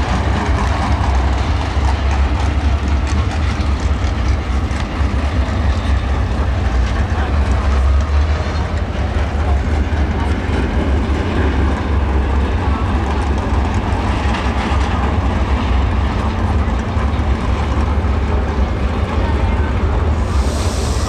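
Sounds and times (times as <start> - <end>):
race car engines rumbling: 0.0 - 21.0
brief hiss: 20.2 - 21.0.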